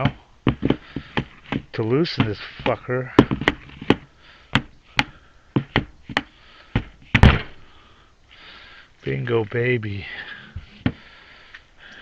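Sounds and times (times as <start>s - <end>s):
hard knocks on metal hydraulic ram: 0.0s - 7.6s.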